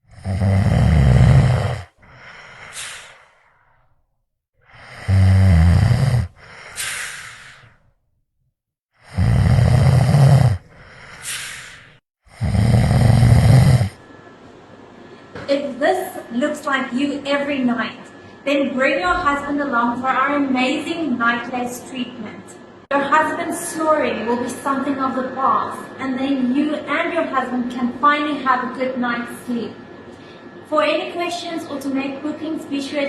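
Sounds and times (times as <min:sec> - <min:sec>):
person snoring: 0:00.0 - 0:03.8, 0:04.7 - 0:07.8, 0:09.0 - 0:14.0
out-breath with rising whistle: 0:01.5 - 0:04.0, 0:06.0 - 0:07.9, 0:10.6 - 0:12.6.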